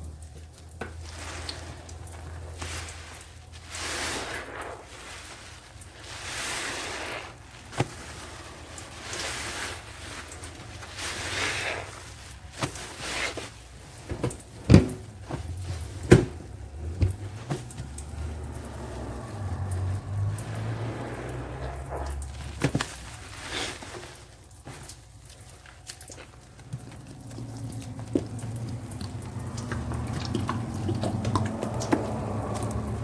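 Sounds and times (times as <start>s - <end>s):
liquid dripping: 0.0s - 33.0s
soapy sponge squishing: 0.0s - 33.0s.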